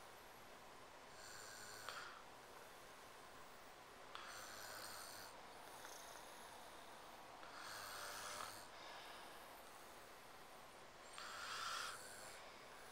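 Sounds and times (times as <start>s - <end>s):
quiet breathing: 0.0s - 12.9s
person snoring: 7.4s - 8.7s, 11.1s - 12.9s.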